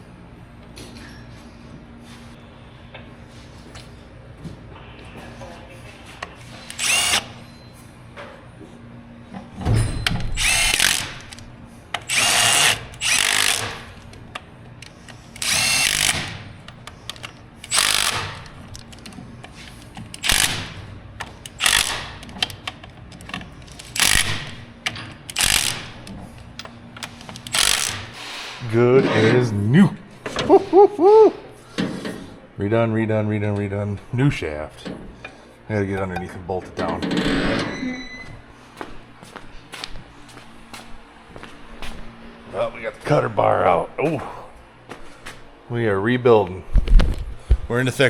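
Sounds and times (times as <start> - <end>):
handheld power tool bursts: 6.7 - 7.3, 10.4 - 11.4, 12.0 - 13.9, 15.3 - 16.5, 17.6 - 18.5, 20.2 - 20.8, 21.5 - 22.2, 23.8 - 24.6, 25.3 - 26.1, 27.4 - 28.2.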